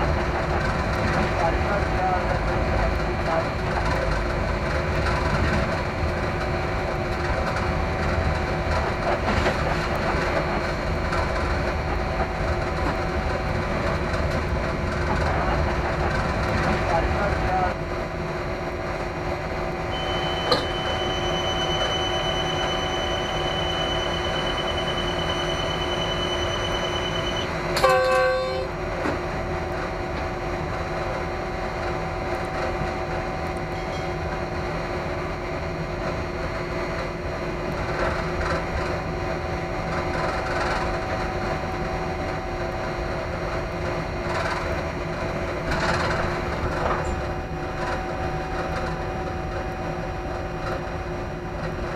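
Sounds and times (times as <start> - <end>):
train rumbling on track: 0.0 - 51.9
train horn blast: 19.9 - 22.8, 27.2 - 28.8.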